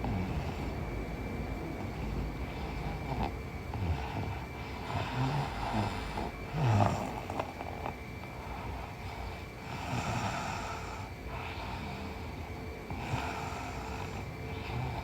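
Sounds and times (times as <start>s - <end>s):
woman snoring: 2.4s - 8.0s, 9.6s - 12.3s, 12.9s - 15.0s.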